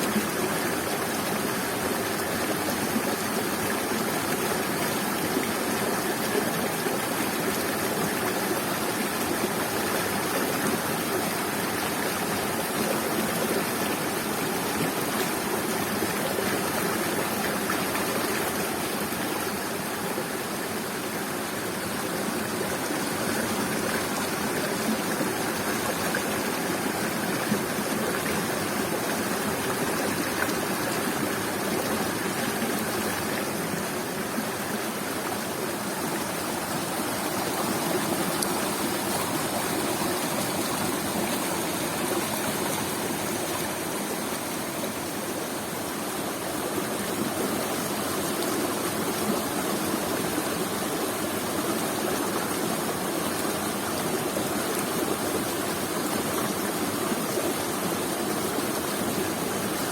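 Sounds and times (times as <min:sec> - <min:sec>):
waterfall rushing: 0:20.8 - 0:51.6.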